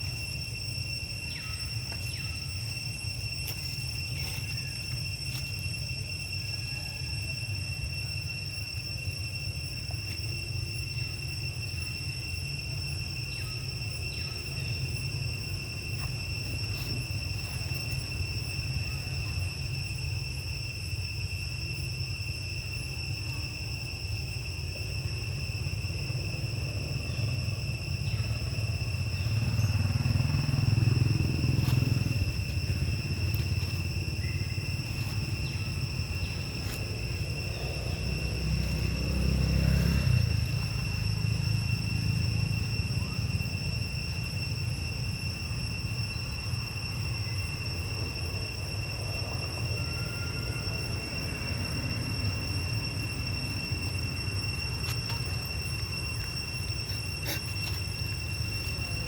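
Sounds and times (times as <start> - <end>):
insects droning: 0.0 - 59.0
low rumble: 26.2 - 43.6.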